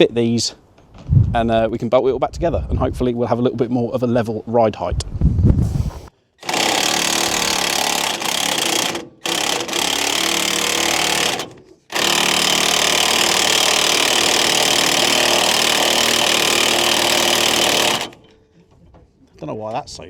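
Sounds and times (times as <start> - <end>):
impact wrench hammering: 6.4 - 18.4.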